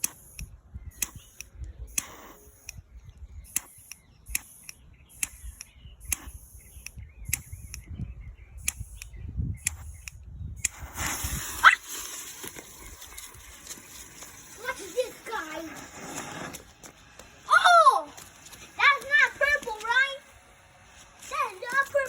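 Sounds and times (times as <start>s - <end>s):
lighter clicking: 3.5s - 7.9s.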